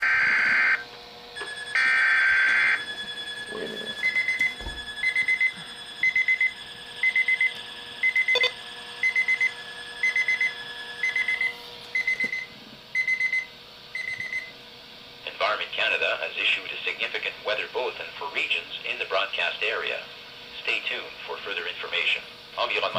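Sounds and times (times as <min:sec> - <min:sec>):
alarm receiver beeping: 0:00.0 - 0:00.8, 0:01.4 - 0:14.5
shrill emergency alert data tones: 0:00.0 - 0:00.8, 0:01.4 - 0:14.5.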